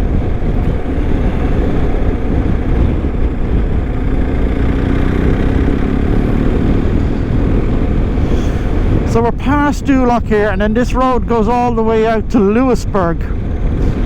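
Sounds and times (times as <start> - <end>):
motorcycle engine running: 0.0 - 10.8
wind and road noise: 0.0 - 14.0.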